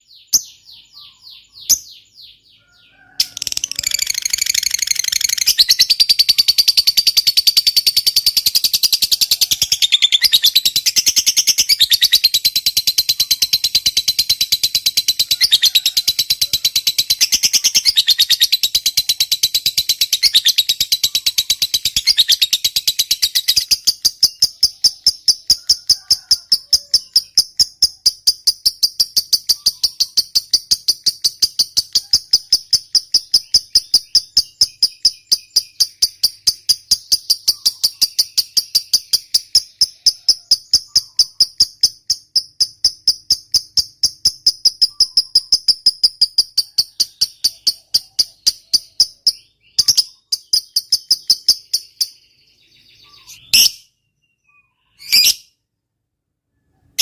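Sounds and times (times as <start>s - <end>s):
bird chirps: 0.0s - 55.7s, 56.4s - 57.0s
bird rapid high chatter: 3.2s - 7.6s, 29.0s - 42.0s.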